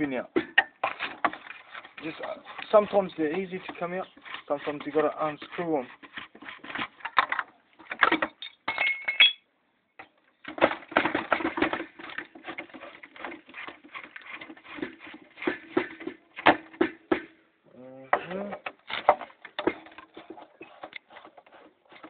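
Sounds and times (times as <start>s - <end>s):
metal tools clinking and tapping: 8.2s - 9.4s.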